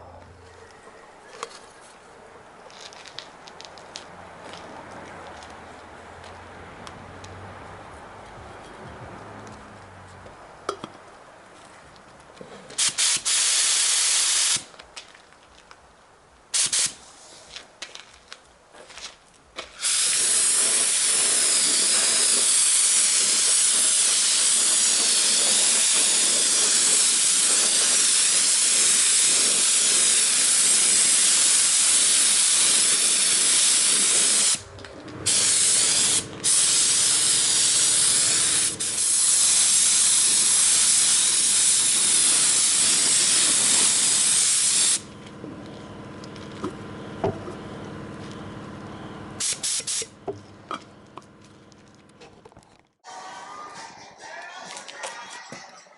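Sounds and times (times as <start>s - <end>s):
compressed air hissing: 12.8s - 14.7s, 16.6s - 17.4s, 19.8s - 34.6s, 35.2s - 45.1s, 49.4s - 50.2s.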